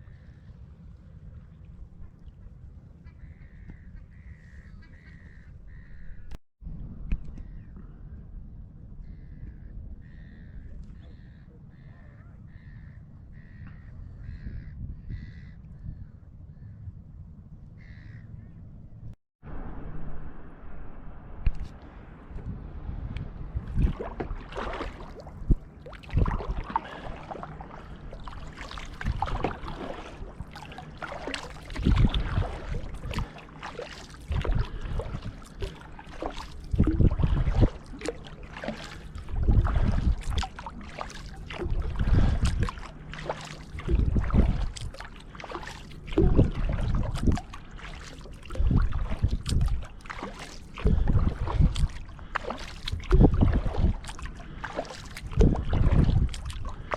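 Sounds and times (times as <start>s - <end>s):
kayak paddle splashing water: 23.5s - 56.9s.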